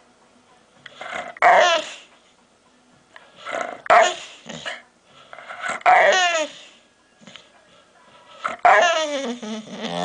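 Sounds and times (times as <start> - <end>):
dog making odd vocal noises: 5.4 - 6.6, 8.4 - 10.0.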